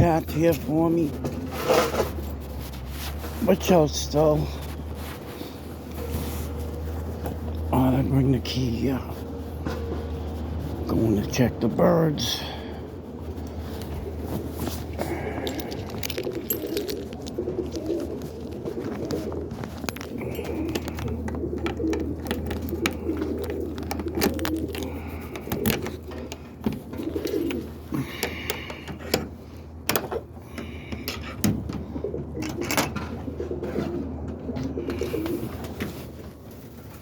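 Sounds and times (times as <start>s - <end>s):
pigeons cooing: 11.6s - 37.0s.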